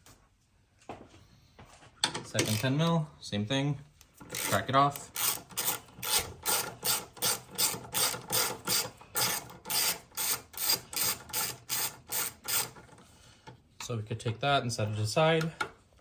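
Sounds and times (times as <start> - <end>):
socket ratchet clicking: 4.3 - 12.8.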